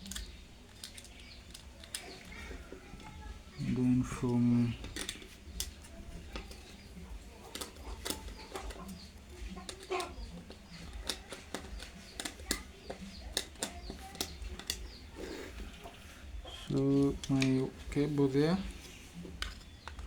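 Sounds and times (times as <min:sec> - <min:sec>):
light clicks of cable handling: 0:04.8 - 0:15.0, 0:16.7 - 0:20.0.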